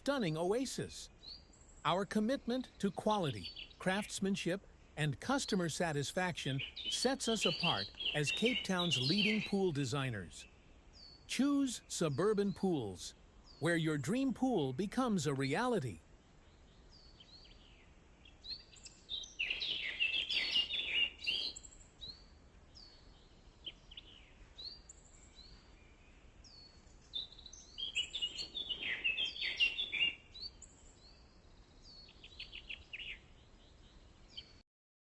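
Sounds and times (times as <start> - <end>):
rapid bird trill: 0.0 - 15.9, 18.4 - 21.9, 27.2 - 30.7
small birds chirping: 0.0 - 34.6.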